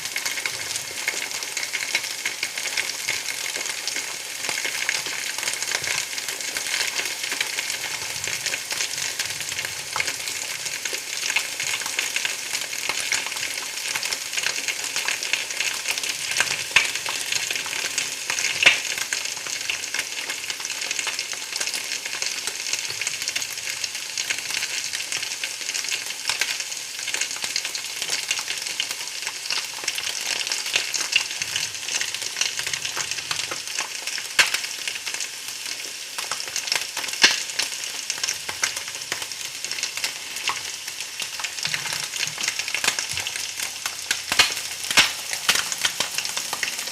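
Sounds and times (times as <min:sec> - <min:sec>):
food sizzling in hot oil: 0:00.0 - 0:46.9
oil popping: 0:41.2 - 0:46.9.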